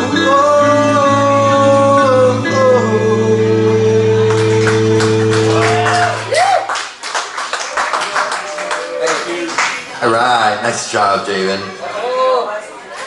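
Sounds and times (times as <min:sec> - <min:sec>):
karaoke backing track: 0:00.0 - 0:06.7.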